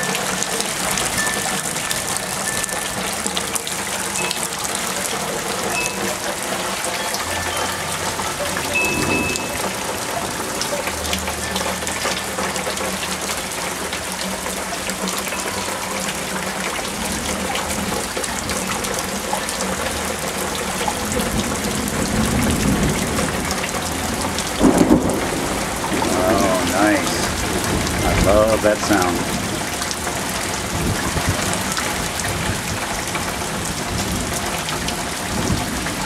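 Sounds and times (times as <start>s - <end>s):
heavy rain falling: 0.0s - 36.0s
distant thunder rumble: 8.4s - 12.0s, 21.2s - 36.0s.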